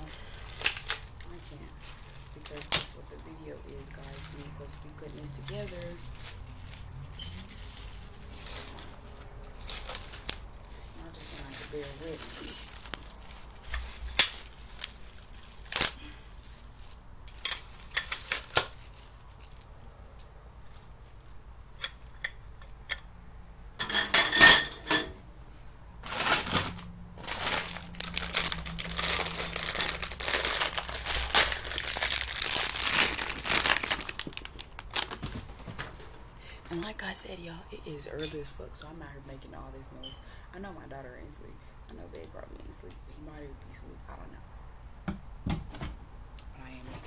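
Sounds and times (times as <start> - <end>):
plastic wrapping crinkling: 0.0 - 21.4, 25.6 - 37.1.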